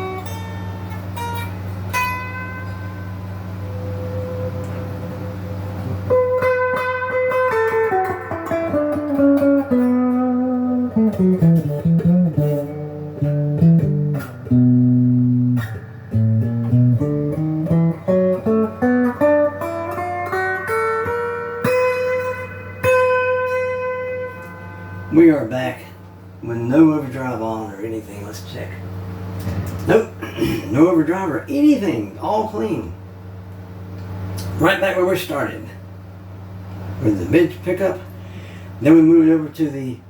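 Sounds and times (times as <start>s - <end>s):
electric guitar single notes: 0.0s - 27.7s
low drone: 2.9s - 6.1s.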